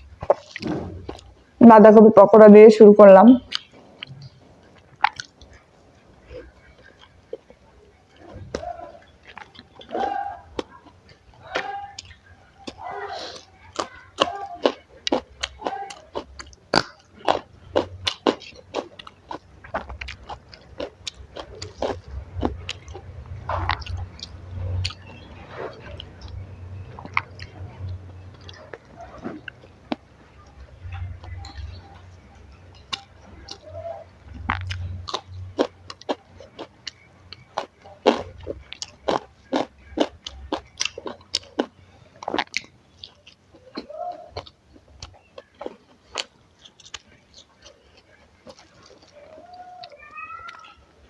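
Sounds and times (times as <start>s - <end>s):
crunchy chewing: 0.0s - 1.6s, 3.4s - 51.0s
wet mouth sounds: 3.4s - 5.6s, 12.0s - 49.4s.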